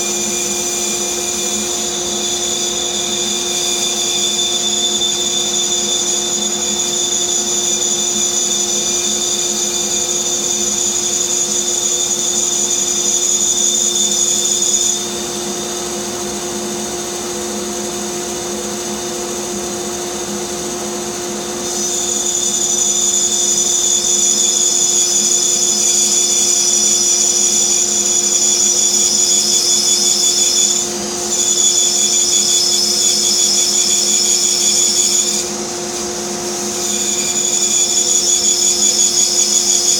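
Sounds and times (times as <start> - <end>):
high blade whine: 0.0 - 39.9.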